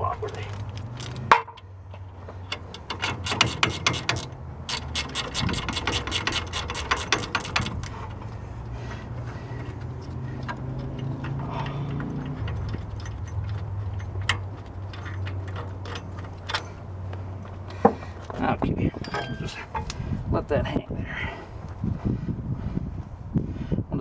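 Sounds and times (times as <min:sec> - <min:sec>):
ratchet wrench clicking: 0:02.5 - 0:08.2.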